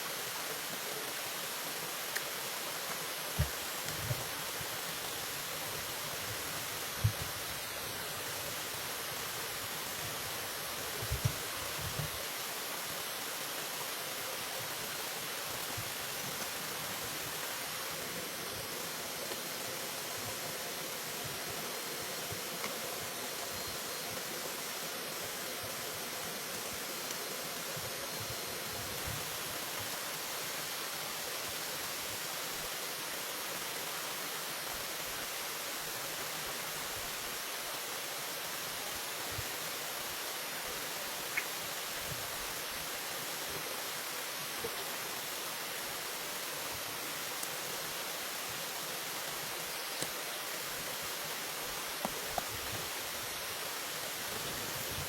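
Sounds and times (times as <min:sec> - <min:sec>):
running water rushing: 0:00.0 - 0:55.0
faint ticks: 0:49.9 - 0:50.2.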